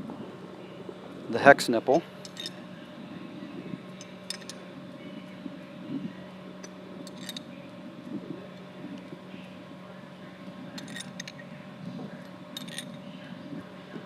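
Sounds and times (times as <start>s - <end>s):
low machine hum: 0.0s - 14.0s
metal tool clinking: 2.2s - 2.6s, 4.0s - 4.6s, 6.6s - 7.5s, 10.8s - 11.4s, 12.6s - 13.0s.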